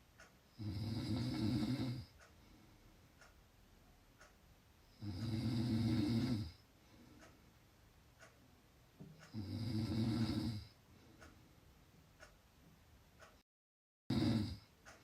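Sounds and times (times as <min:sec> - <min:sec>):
person snoring: 0:00.6 - 0:02.1, 0:04.9 - 0:06.6, 0:09.3 - 0:10.8, 0:14.1 - 0:14.7.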